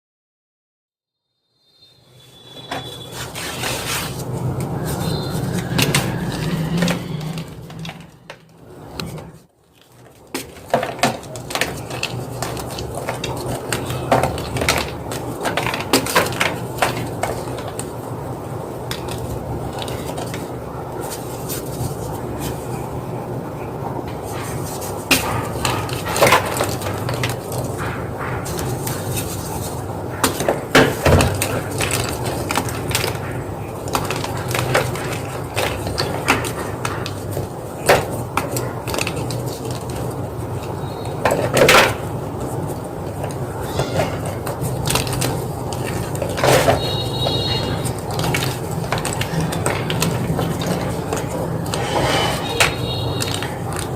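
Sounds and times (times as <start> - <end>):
chalk crunching: 2.9 - 7.5.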